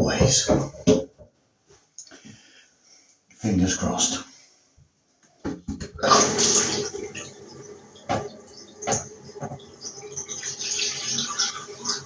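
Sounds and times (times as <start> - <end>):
water running into a bath: 5.8 - 12.0
loud water splashes: 6.0 - 7.5.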